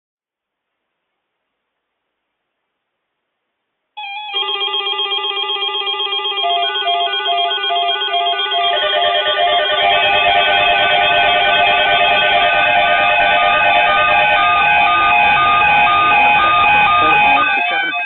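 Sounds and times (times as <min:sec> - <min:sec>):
warbling electronic alarm beeps: 0:04.0 - 0:18.0.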